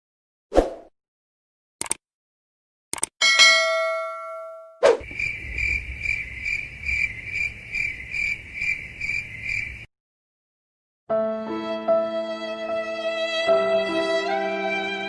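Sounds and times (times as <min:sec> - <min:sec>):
click: 0:01.8 - 0:02.0, 0:02.9 - 0:03.1
bell-like ding: 0:03.2 - 0:04.8
crickets chirping: 0:05.0 - 0:09.9.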